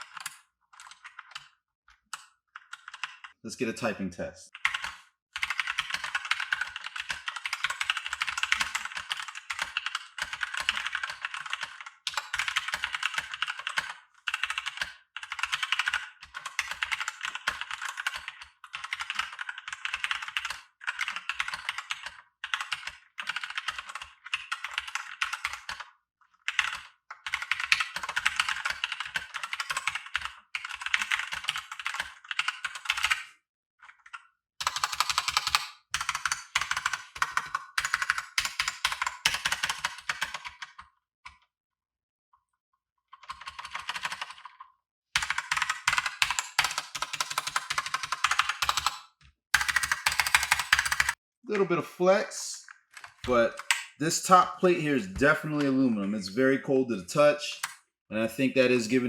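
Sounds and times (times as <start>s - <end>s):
fast typing on mechanical keyboard: 0.0s - 1.6s, 2.2s - 3.4s, 4.6s - 40.9s, 43.1s - 51.2s.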